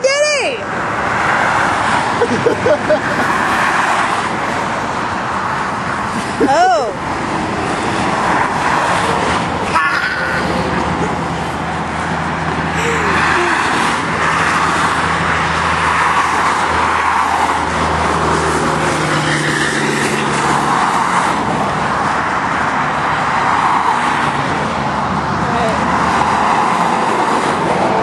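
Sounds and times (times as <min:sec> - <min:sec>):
steady engine hum: 0:00.0 - 0:28.0
vehicles driving past: 0:00.0 - 0:28.0.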